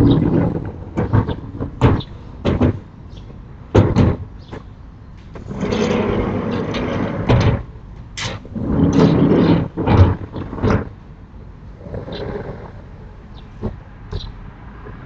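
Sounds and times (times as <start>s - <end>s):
shutters knocking and thumping: 0.0s - 4.6s, 5.3s - 10.9s.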